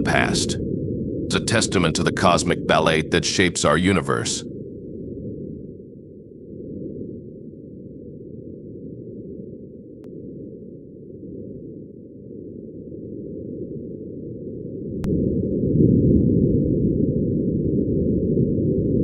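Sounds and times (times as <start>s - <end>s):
low muffled wind rumble: 0.0s - 10.0s, 15.0s - 19.0s.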